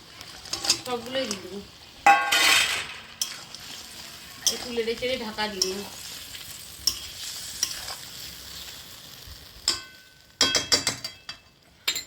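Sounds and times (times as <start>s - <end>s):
curry bubbling in a pan: 0.0s - 10.4s
metal lid clanking on pan: 2.0s - 3.4s
spatula clinking: 2.1s - 8.1s, 9.6s - 12.0s.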